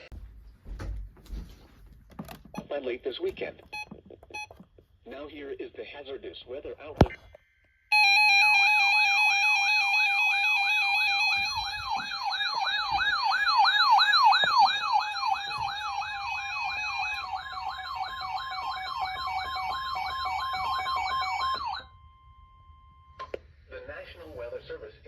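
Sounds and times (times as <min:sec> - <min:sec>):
electronic siren yelping: 0:07.9 - 0:22.4.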